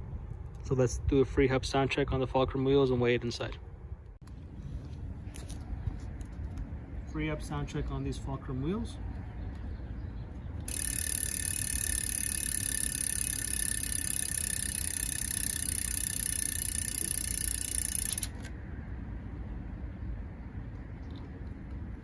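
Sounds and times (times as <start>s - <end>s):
bicycle freehub ratcheting buzz: 10.7s - 18.5s.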